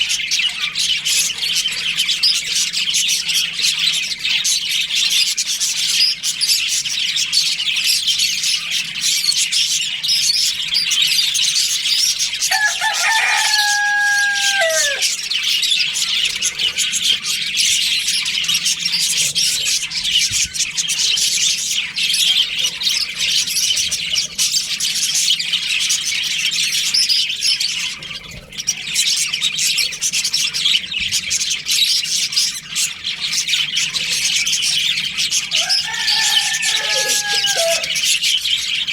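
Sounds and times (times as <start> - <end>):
budgerigars chattering and chirping: 0.0 - 38.9
rooster crowing: 12.4 - 15.3, 35.5 - 38.3.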